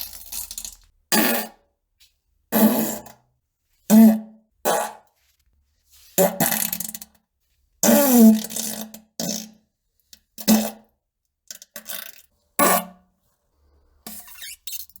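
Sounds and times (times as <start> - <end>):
farts: 7.9 - 9.6.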